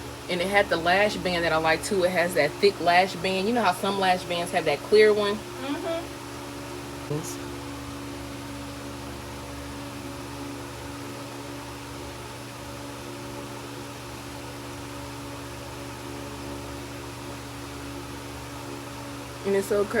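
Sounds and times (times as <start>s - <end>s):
machine hum: 0.0s - 7.4s.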